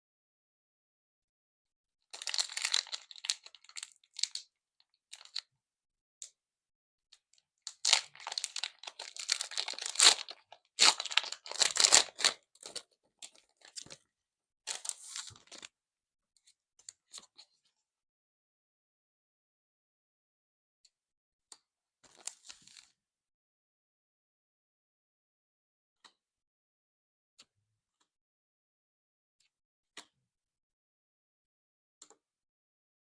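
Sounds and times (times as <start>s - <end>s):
foil wrappers crinkling and tearing: 2.2s - 4.4s, 7.8s - 12.8s, 14.7s - 15.7s.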